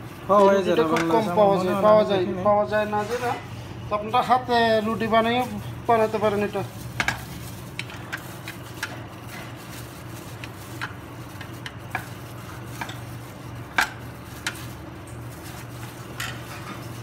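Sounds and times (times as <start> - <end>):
steady low hum: 0.0 - 17.0
utensils and dishes clicking: 10.2 - 17.0.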